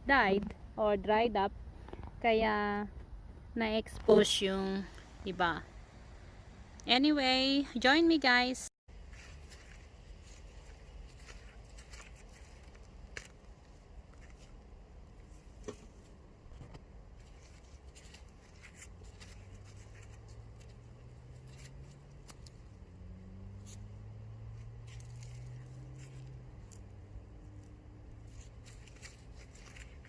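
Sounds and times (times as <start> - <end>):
low steady hum: 0.0 - 30.0
crunches and rustles of soil: 8.9 - 30.0.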